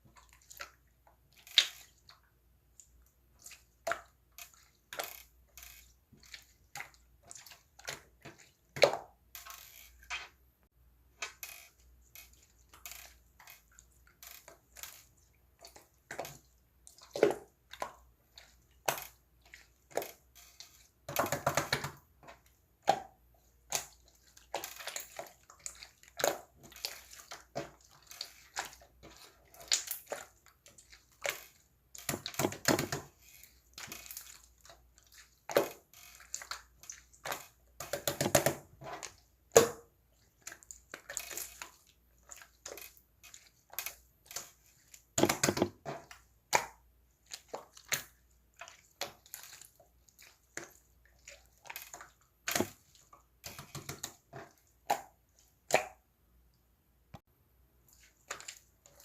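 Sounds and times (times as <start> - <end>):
crackling squishing handling noise: 11.1 - 56.0, 57.7 - 59.0.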